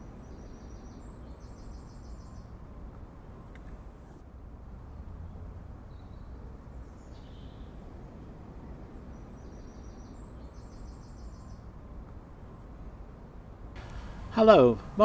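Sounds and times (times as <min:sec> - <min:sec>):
low outdoor rumble: 0:13.8 - 0:15.0
songbird calls: 0:13.8 - 0:15.0.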